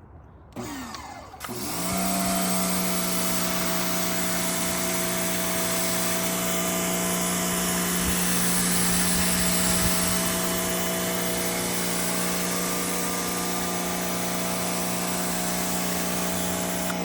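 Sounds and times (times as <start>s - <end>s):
pressure washer running: 0.6s - 17.0s.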